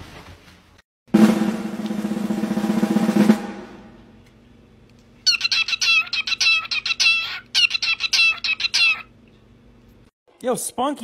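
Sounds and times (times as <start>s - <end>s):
drum roll: 1.1s - 4.2s
bird squawking calls: 5.2s - 9.2s.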